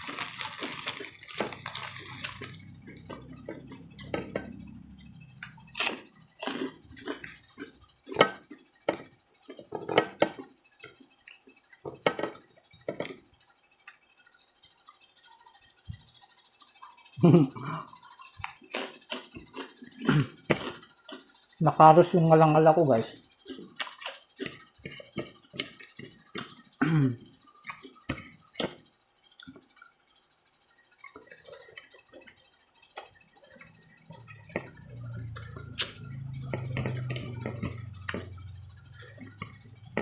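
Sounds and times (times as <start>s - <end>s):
chewing and lip smacks: 4.9s - 8.5s, 13.8s - 14.6s.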